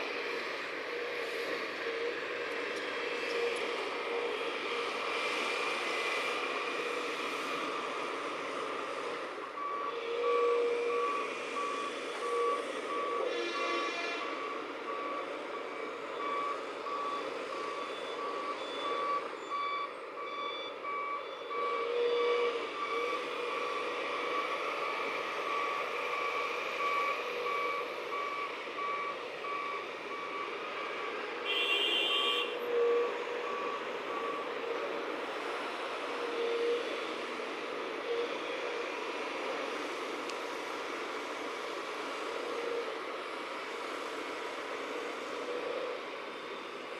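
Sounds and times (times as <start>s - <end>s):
reversing alarm beeping: 0.8s - 37.4s.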